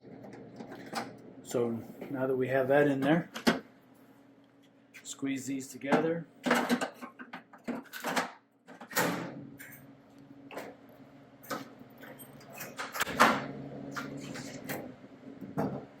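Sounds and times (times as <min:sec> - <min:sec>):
steady low hum: 0:00.1 - 0:06.8, 0:09.0 - 0:16.0.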